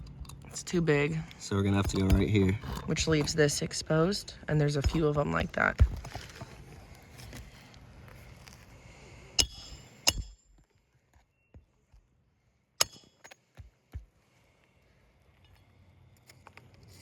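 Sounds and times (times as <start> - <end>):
hammer striking nails: 9.4 - 10.4.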